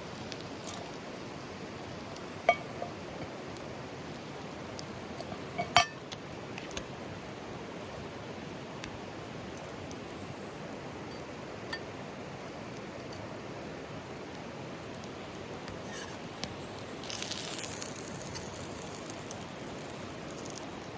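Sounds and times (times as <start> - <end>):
tableware clinking: 2.4 - 3.0, 5.3 - 6.0.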